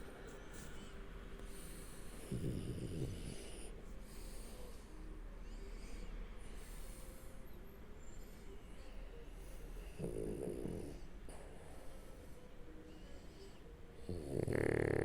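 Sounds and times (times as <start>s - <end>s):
dog snoring and snuffling: 1.5s - 4.5s, 9.8s - 11.8s, 14.0s - 15.0s.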